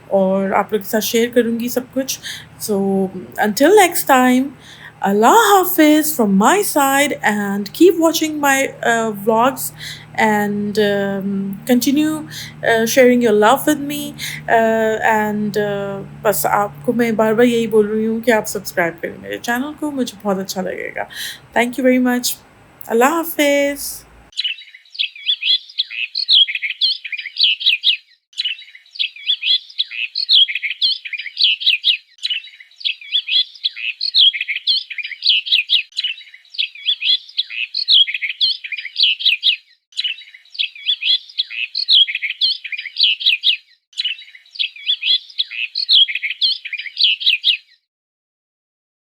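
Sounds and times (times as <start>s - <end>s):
birds chirping: 0.0s - 47.6s.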